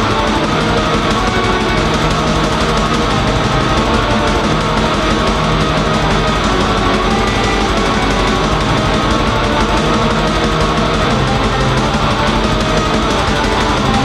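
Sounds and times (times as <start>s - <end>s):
black metal music: 0.0s - 14.0s.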